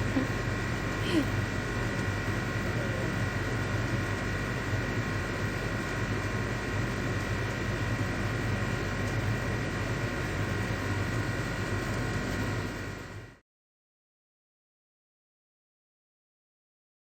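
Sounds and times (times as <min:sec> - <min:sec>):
washing machine running: 0:00.0 - 0:13.4.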